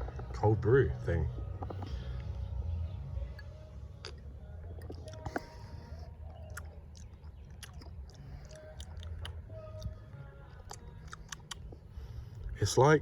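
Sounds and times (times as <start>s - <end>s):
steady low rumble: 0.0s - 13.0s
mouth clicks and smacks: 3.4s - 10.0s, 10.6s - 12.5s
person sipping: 4.0s - 9.4s, 10.6s - 12.4s.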